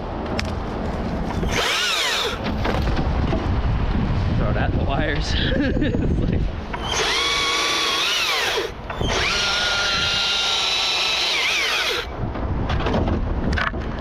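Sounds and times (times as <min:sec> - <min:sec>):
battery chainsaw electric whine: 0:01.4 - 0:02.4, 0:06.7 - 0:12.1.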